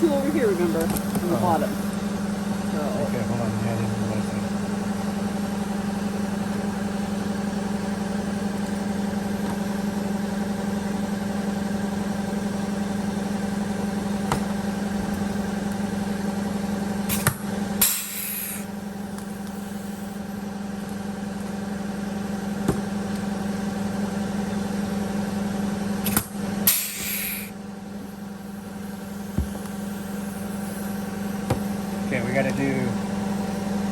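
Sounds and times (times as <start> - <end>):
engine idling hum: 0.0 - 33.9
rivet tool click and hiss: 26.0 - 27.5.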